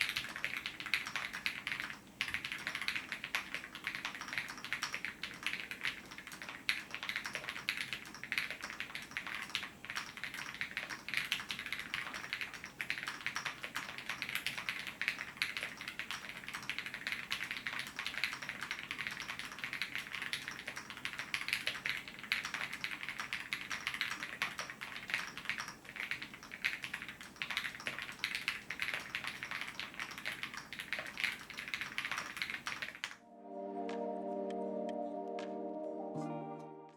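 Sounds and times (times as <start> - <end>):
fast typing on mechanical keyboard: 0.0 - 33.2
music: 33.2 - 36.9.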